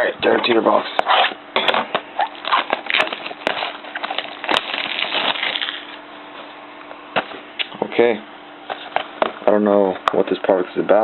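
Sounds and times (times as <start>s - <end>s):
packaging crinkling and clicking: 1.9s - 6.0s.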